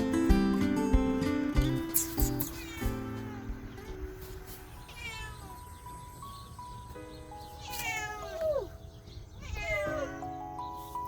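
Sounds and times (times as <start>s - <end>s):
soft background music: 0.0s - 11.0s
cat meowing: 2.0s - 6.6s, 7.4s - 10.6s.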